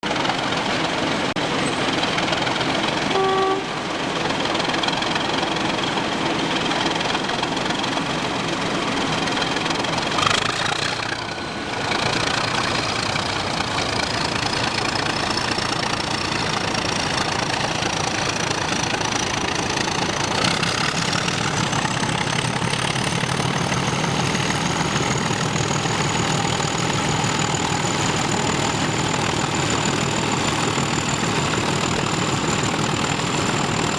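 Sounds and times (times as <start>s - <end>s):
diesel locomotives pulling away: 0.0s - 33.9s
high engine whine: 0.0s - 33.9s
brief tone: 3.1s - 3.8s.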